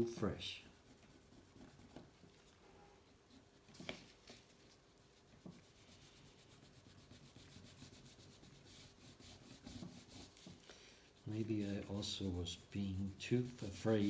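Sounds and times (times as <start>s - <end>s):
wet sandpaper rubbing: 5.6s - 10.6s, 11.2s - 14.0s.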